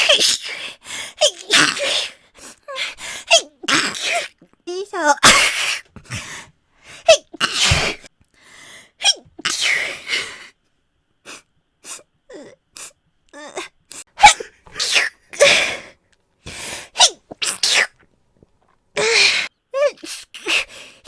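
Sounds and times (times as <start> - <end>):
woman sneezing: 5.1 - 5.8, 7.1 - 8.1, 14.1 - 15.8
woman breathing and sniffing: 15.4 - 17.0.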